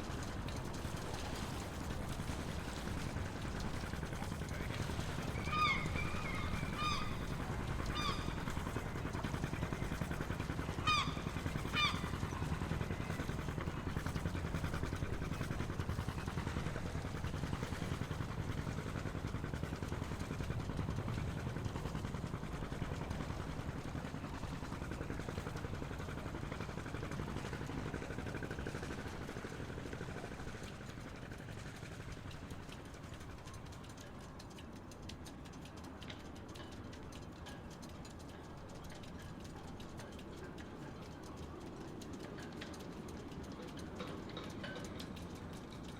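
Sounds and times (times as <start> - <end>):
boat motor rumbling: 0.0 - 45.9
short bird calls: 5.3 - 8.4.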